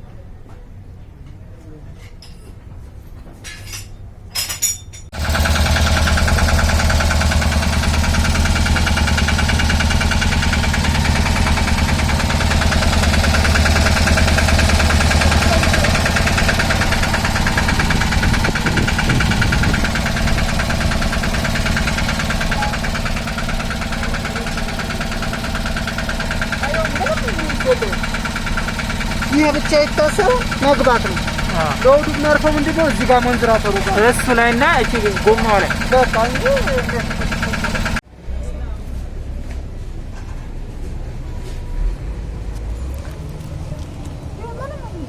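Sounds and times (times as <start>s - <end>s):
engine starting and idling: 5.1s - 38.0s.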